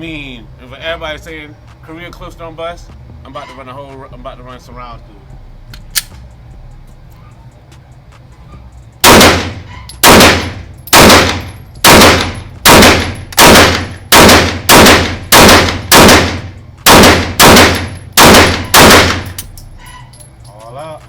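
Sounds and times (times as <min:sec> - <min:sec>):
pistol shots with echo: 0:09.0 - 0:19.4.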